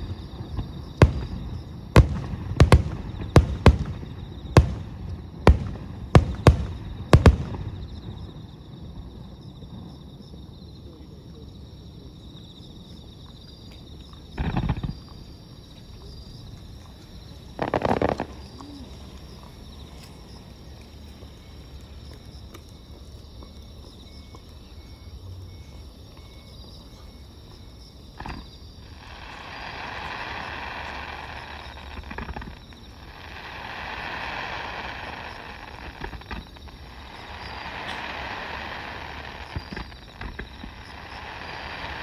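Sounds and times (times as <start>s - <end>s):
sharp firework pops: 0.0s - 8.4s, 17.6s - 18.6s, 35.3s - 42.0s
firework bang: 0.0s - 8.5s, 37.2s - 42.0s
fireworks crackling: 0.0s - 8.5s, 17.6s - 18.4s, 28.9s - 42.0s
low fireworks rumble: 0.0s - 11.4s, 14.3s - 21.7s, 27.4s - 42.0s.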